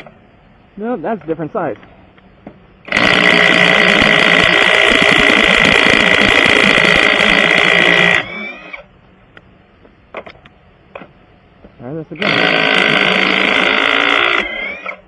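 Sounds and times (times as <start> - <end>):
motor whine spinning down: 2.8 - 8.9, 12.1 - 15.0.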